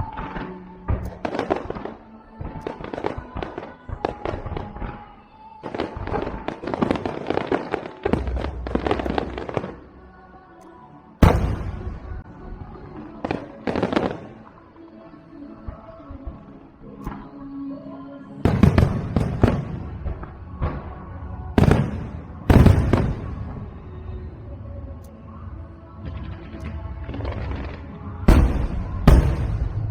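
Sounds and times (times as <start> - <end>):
fireworks bursting and crackling: 0.0 - 10.0, 11.2 - 14.7, 18.4 - 24.7, 26.0 - 29.9
music: 0.0 - 29.9
loud firework boom: 11.2 - 12.1, 28.3 - 29.9.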